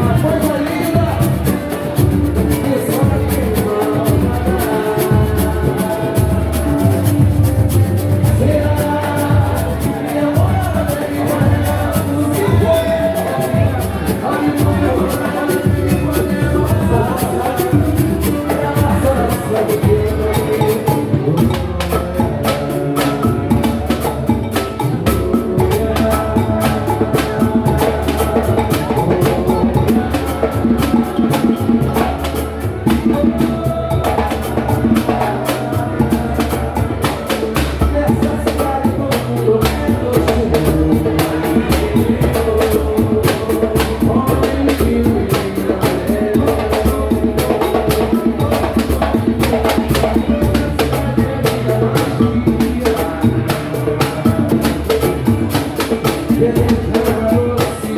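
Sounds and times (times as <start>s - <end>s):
drums and hand percussion: 0.0s - 57.9s
samba band playing: 0.0s - 57.9s
voices over music: 0.0s - 57.9s.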